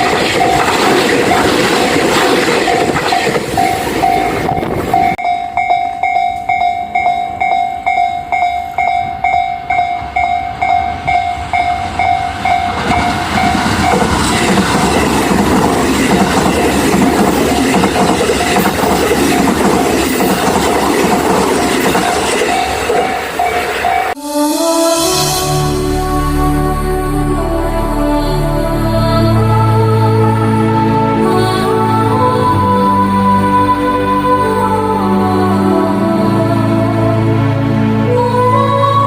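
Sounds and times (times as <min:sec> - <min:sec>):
level crossing warning bell: 0:00.0 - 0:24.2
train running past: 0:00.0 - 0:39.0.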